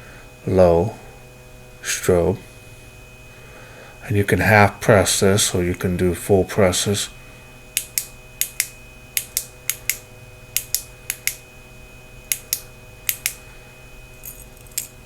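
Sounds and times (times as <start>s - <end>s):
flashlight switch clicks: 7.8s - 10.0s, 10.6s - 11.4s, 12.3s - 13.4s.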